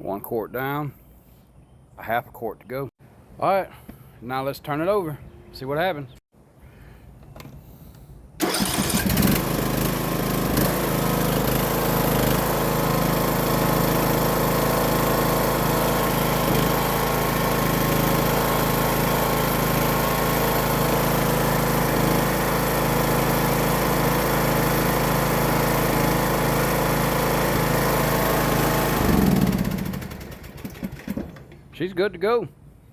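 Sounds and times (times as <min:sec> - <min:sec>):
mower engine cranking and running: 0:08.4 - 0:31.7.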